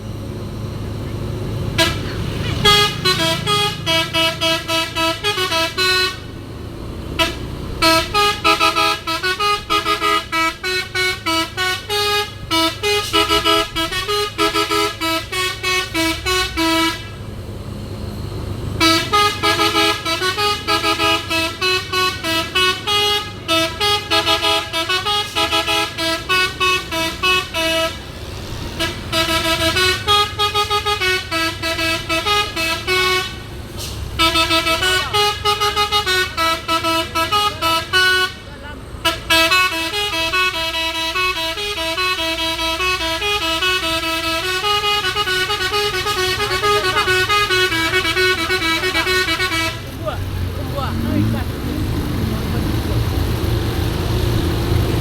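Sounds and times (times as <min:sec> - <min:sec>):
truck engine rumble: 0:00.0 - 0:55.0
multi-tone air horn melody: 0:01.8 - 0:06.4, 0:07.2 - 0:17.2, 0:18.8 - 0:50.1.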